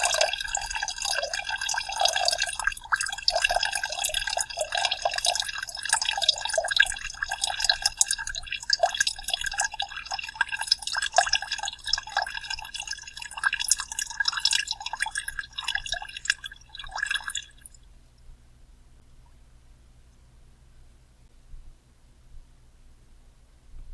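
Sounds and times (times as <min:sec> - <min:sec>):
soda pouring and splashing: 0:00.0 - 0:17.8.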